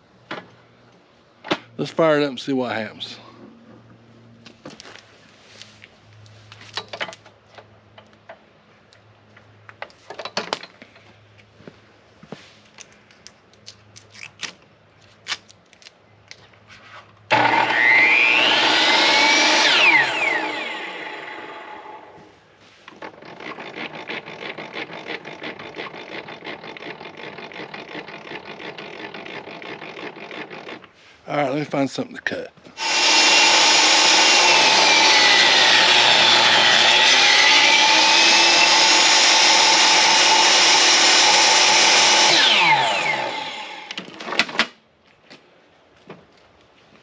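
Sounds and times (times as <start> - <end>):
rapid mechanical clicking: 23.2 - 30.9.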